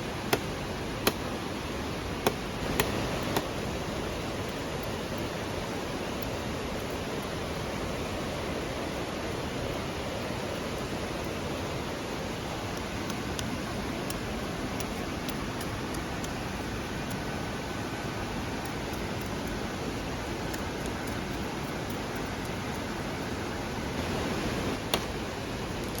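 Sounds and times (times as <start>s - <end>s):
campfire hissing: 0.0s - 26.0s
fire crackles and pops: 24.6s - 26.0s.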